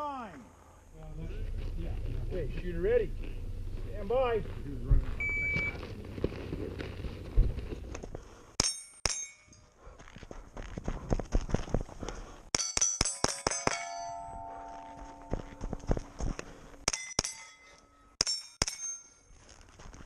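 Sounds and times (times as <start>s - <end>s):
shot timer beep: 5.2s - 5.8s
steel targets ringing: 8.6s - 9.6s, 12.5s - 19.3s.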